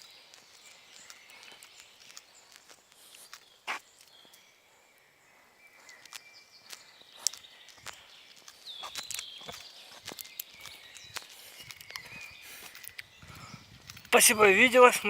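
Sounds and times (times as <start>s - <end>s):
twigs snapping underfoot: 0.0s - 4.5s, 5.8s - 13.2s
footsteps on forest floor: 0.0s - 15.0s
small birds singing: 0.0s - 15.0s.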